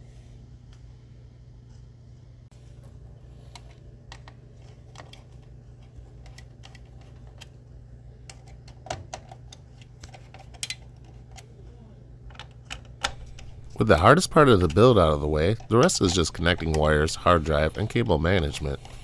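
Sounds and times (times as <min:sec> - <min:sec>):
steady low hum: 0:00.0 - 0:19.0
computer parts clicking and tapping: 0:08.3 - 0:11.4, 0:12.3 - 0:19.0.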